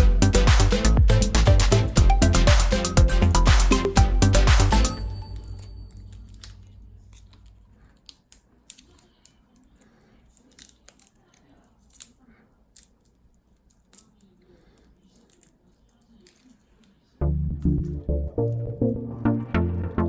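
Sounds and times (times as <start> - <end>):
background music: 0.0 - 7.2, 17.2 - 20.0.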